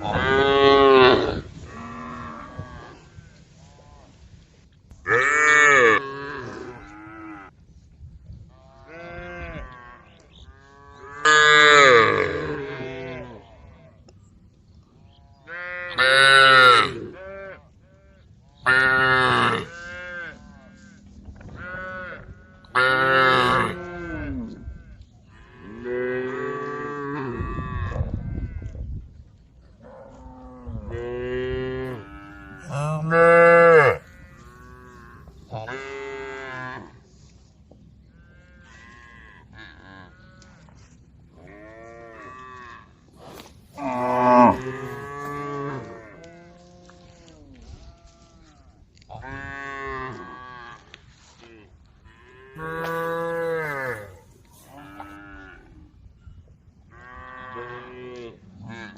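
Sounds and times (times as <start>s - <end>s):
cow mooing loudly: 30.9s - 36.9s, 43.8s - 46.1s, 52.5s - 55.7s
faint answering moos: 31.9s - 34.0s.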